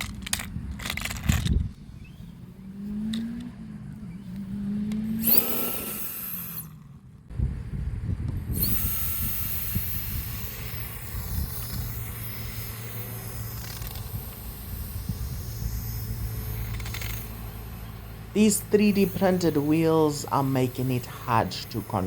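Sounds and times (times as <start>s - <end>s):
electric fan jet whirring: 0.0s - 22.0s.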